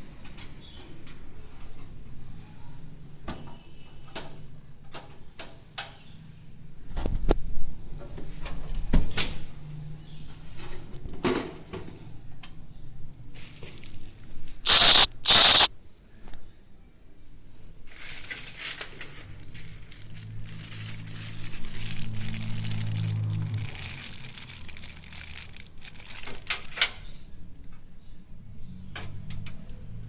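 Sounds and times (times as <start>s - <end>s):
packaging crinkling and rustling: 17.9s - 26.8s.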